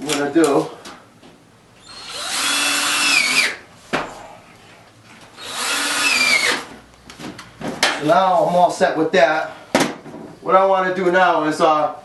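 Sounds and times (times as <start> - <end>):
power drill driving screws: 1.8 - 3.6, 5.4 - 6.7.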